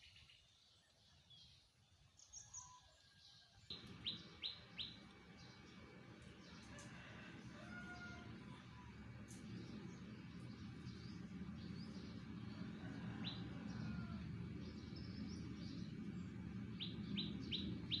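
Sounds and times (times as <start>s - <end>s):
small birds chirping: 0.0s - 18.0s
low background rumble: 3.7s - 18.0s.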